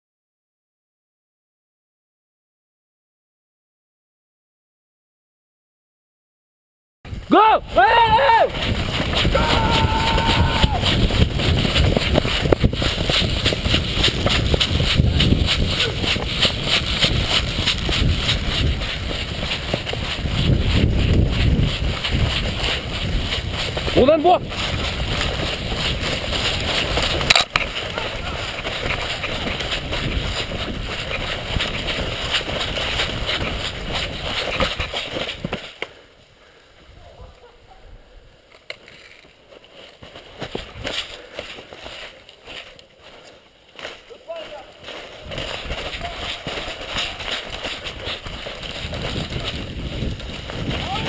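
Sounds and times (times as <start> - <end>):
wind rumbling on microphone: 7.1 - 35.6, 45.1 - 51.0
running footsteps: 7.1 - 36.0, 38.5 - 51.0
rustling from movement: 8.2 - 51.0.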